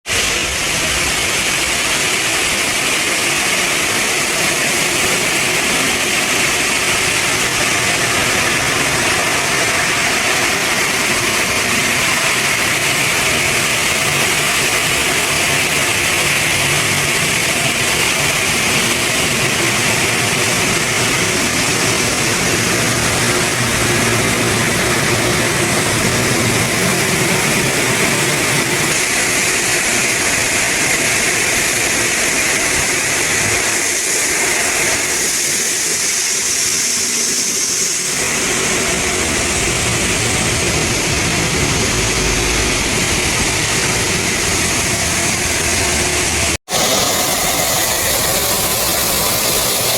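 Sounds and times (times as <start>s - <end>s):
heavy machinery drone with hiss: 0.1s - 49.9s.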